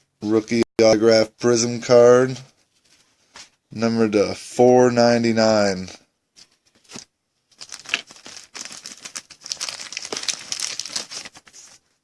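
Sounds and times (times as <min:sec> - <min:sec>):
thin plastic crinkling: 0:06.4 - 0:12.0.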